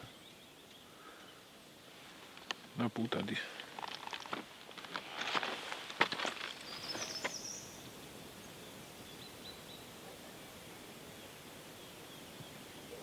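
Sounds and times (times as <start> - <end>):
bird chirping: 0.0 - 1.8, 6.4 - 13.0
faint outdoor background: 0.0 - 13.0
rustles and clicks: 3.3 - 7.4.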